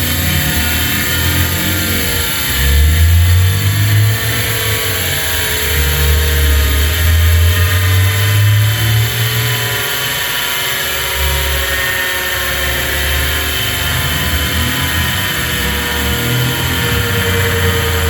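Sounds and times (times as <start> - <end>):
fan motor whine: 0.0 - 18.0
low rumble: 13.6 - 18.0.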